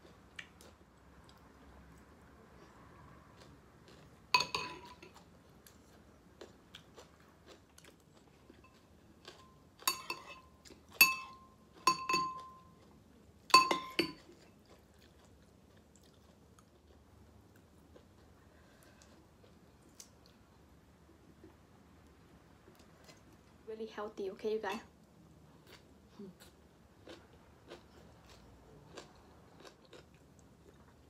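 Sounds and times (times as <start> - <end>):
faint chewing: 0.0 - 23.6, 25.5 - 31.0
utensil clinking on dishware: 4.4 - 5.2, 9.9 - 12.7, 13.5 - 14.2.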